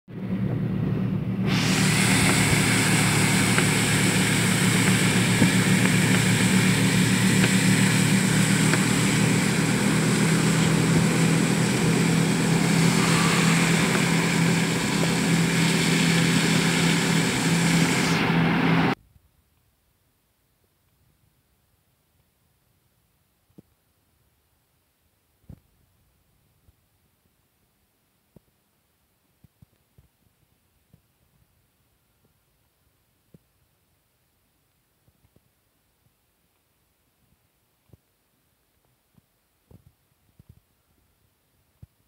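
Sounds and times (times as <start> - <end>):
mechanical drone with hiss: 1.4 - 19.0.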